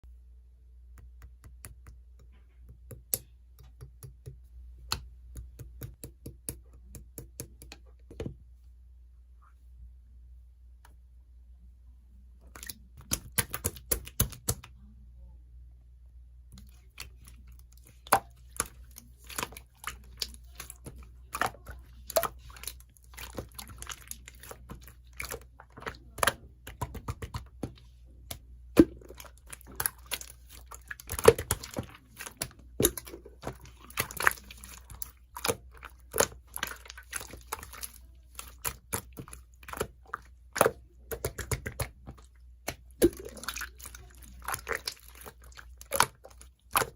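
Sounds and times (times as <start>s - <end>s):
faint low hum: 0.0s - 46.9s
slime clicking and popping: 12.6s - 14.6s.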